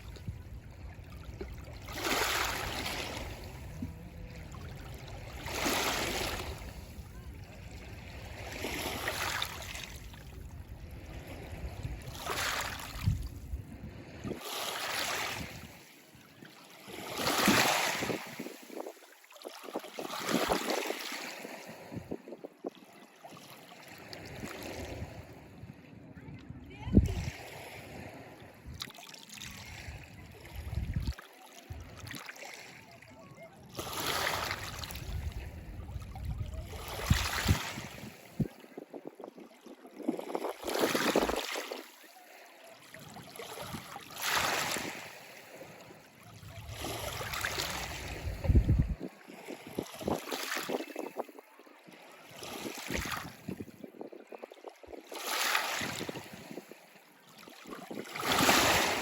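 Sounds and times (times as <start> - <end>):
waves washing in: 0.0 - 22.5, 23.3 - 25.6, 26.6 - 51.4, 52.2 - 54.4, 55.0 - 59.0
wind buffeting microphone: 12.8 - 14.4, 20.2 - 22.5, 24.2 - 28.8, 29.7 - 32.2, 34.6 - 39.3, 46.3 - 51.4, 52.9 - 55.0.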